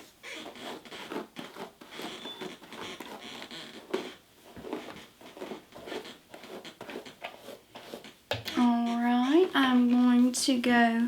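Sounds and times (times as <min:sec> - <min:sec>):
hairbrush brushing hair: 0:00.0 - 0:11.0.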